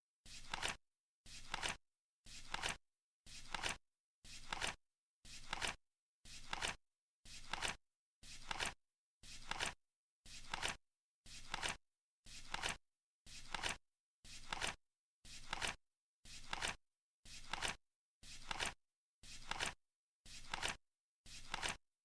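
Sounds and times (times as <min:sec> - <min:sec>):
flip clock cards flipping: 0:00.4 - 0:00.8, 0:01.4 - 0:01.8, 0:02.4 - 0:02.8, 0:03.4 - 0:03.8, 0:04.4 - 0:04.8, 0:05.4 - 0:05.8, 0:06.4 - 0:06.8, 0:07.4 - 0:07.8, 0:08.4 - 0:08.8, 0:09.4 - 0:09.8, 0:10.4 - 0:10.8, 0:11.4 - 0:11.8, 0:13.5 - 0:13.8, 0:14.4 - 0:14.8, 0:15.4 - 0:15.8, 0:16.4 - 0:16.8, 0:17.4 - 0:17.8, 0:18.4 - 0:18.8, 0:19.4 - 0:19.8, 0:20.4 - 0:20.8, 0:21.4 - 0:21.8.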